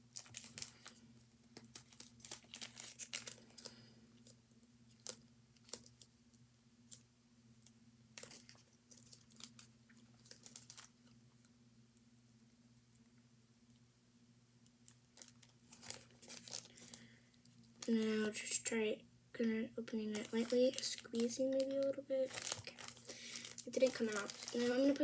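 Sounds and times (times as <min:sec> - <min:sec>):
plastic bag crinkling: 0:00.0 - 0:06.1, 0:08.2 - 0:11.2, 0:14.9 - 0:18.7, 0:19.4 - 0:25.0.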